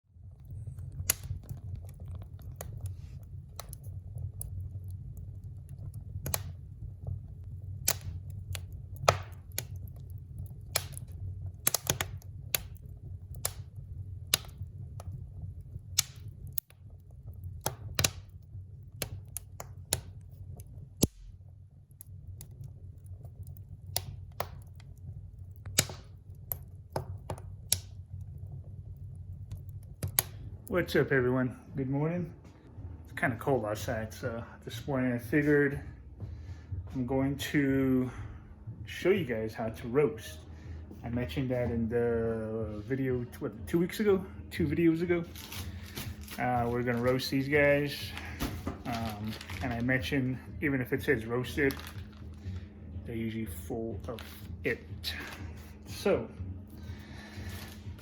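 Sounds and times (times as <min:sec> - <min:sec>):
steady low hum: 0:00.1 - 0:58.0
sharp clicks and ticks: 0:00.4 - 0:30.5.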